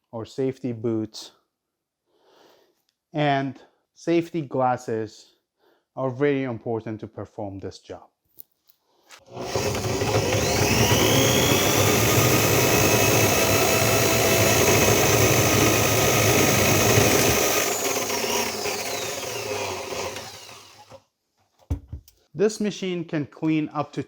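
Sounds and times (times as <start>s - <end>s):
drain snake electric motor: 9.3s - 21.0s.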